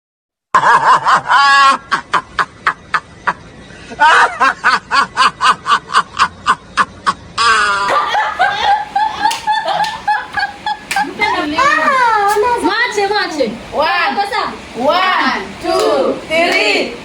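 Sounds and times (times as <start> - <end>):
rhythmic laughter: 0.6 - 12.1
voices: 7.4 - 17.0.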